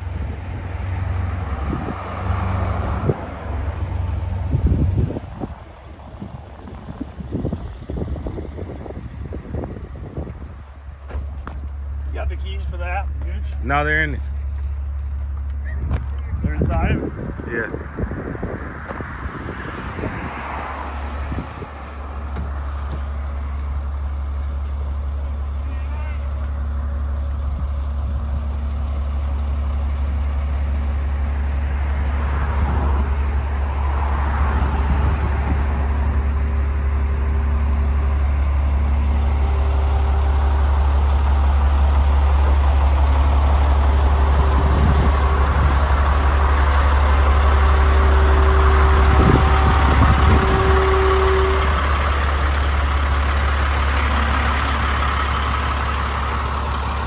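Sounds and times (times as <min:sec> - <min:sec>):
truck engine idling: 0:00.0 - 0:57.0
thin whine: 0:44.1 - 0:55.8.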